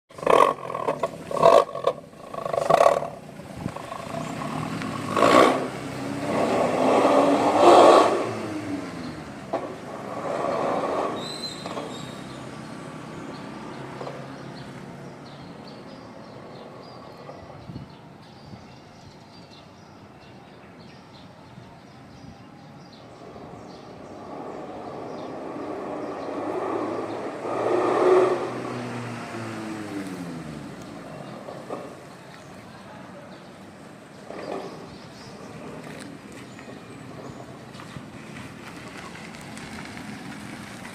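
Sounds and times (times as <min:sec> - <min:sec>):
engine revving with growling exhaust: 0:00.1 - 0:15.8, 0:23.1 - 0:32.2, 0:34.1 - 0:40.9.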